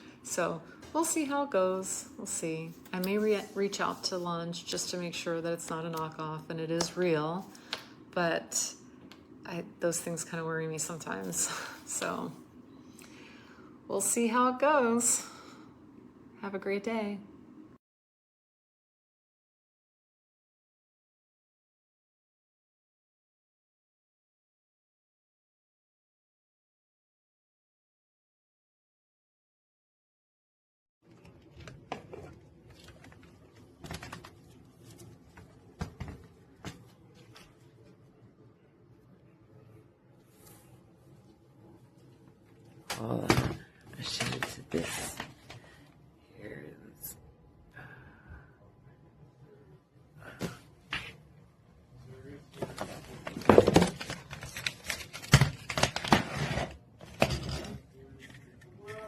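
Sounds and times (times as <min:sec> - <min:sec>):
low steady room hum: 0:00.0 - 0:17.8, 0:31.0 - 0:59.0
objects clattering and knocking: 0:52.5 - 0:59.0.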